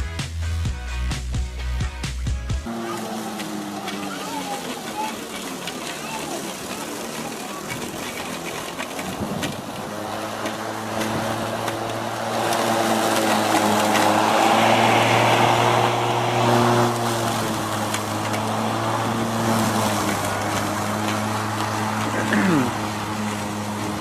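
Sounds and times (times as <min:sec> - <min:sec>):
electric lawn mower running: 0:02.6 - 0:24.0.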